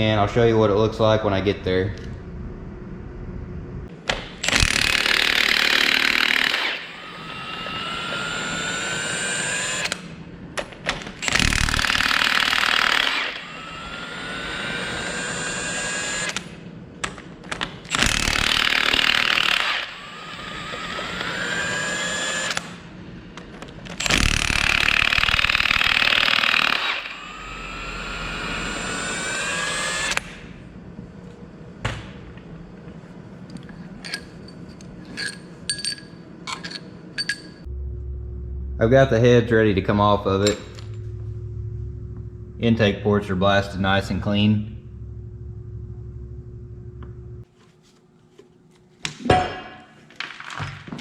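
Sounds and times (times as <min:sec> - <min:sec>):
impact wrench hammering: 0:04.0 - 0:08.4, 0:17.9 - 0:20.0
faint rising whine: 0:32.4 - 0:47.4.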